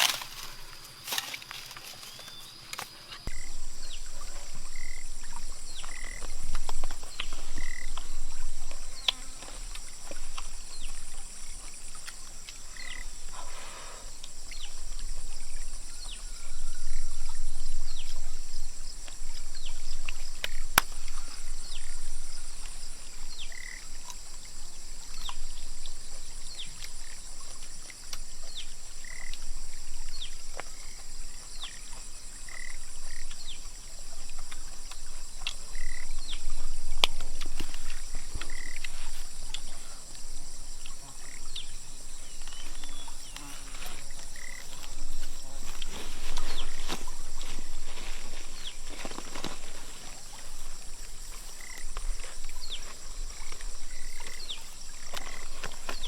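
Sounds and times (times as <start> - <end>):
frog calls: 0.0 - 56.0
high insect trill: 0.0 - 56.0.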